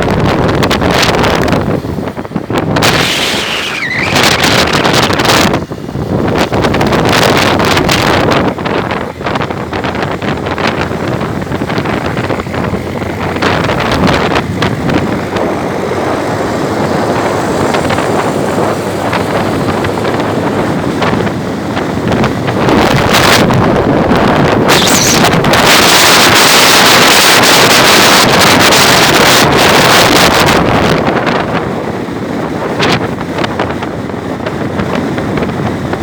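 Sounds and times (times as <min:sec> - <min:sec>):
motorcycle running: 0:00.0 - 0:36.0
wind buffeting microphone: 0:00.0 - 0:36.0.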